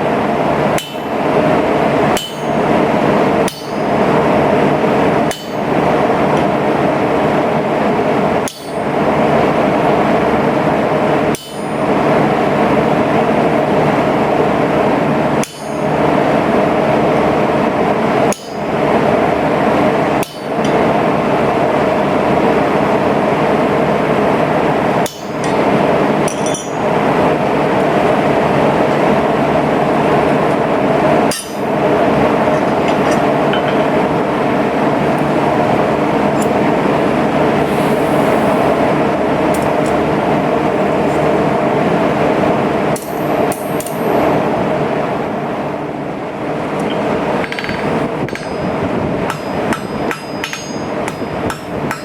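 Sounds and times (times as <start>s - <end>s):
rapid hammering on steel: 2.1s - 2.8s, 3.4s - 4.2s, 5.2s - 5.8s, 15.4s - 16.1s, 20.1s - 21.0s, 47.4s - 52.0s.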